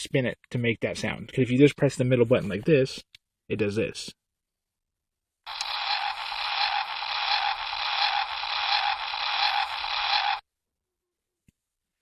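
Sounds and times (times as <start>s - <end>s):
toy hissing static sound effect: 5.5s - 10.4s.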